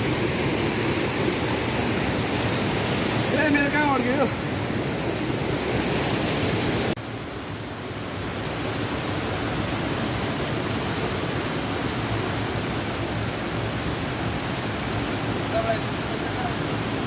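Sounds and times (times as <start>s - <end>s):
flowing water rushing: 0.0s - 17.0s.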